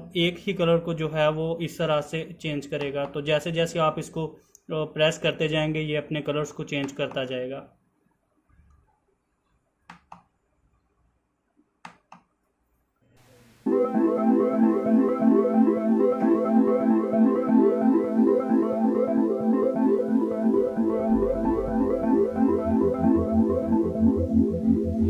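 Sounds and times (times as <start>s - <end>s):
repeating pitched background music: 13.7s - 25.0s.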